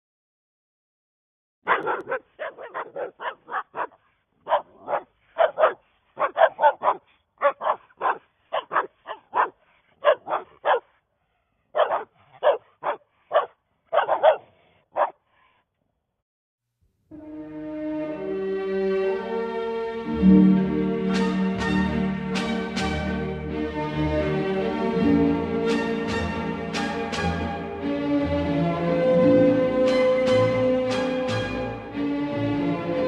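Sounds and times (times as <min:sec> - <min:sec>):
dog barking: 0:01.6 - 0:11.0, 0:11.7 - 0:15.2.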